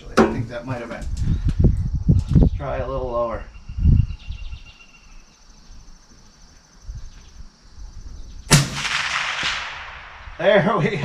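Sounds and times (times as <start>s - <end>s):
rifle shot with echo: 8.5s - 10.6s.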